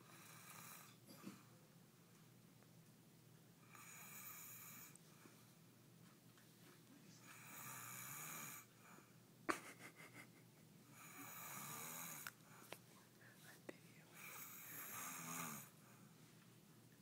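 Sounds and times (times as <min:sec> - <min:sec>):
man snoring faintly: 0:03.6 - 0:05.0, 0:07.2 - 0:08.7, 0:10.9 - 0:12.4, 0:14.1 - 0:15.8.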